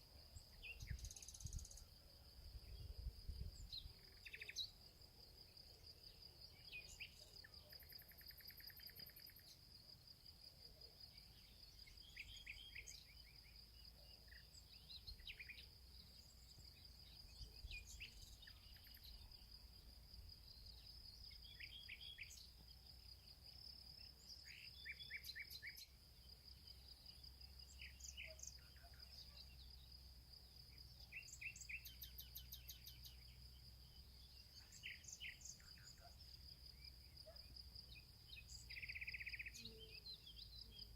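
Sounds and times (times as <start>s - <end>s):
bird chirps: 0.3s - 1.9s, 3.5s - 4.8s, 6.5s - 9.6s, 11.1s - 19.5s, 20.6s - 22.8s, 24.0s - 26.0s, 27.6s - 29.8s, 30.8s - 40.9s
insect chorus trilling: 6.2s - 9.9s.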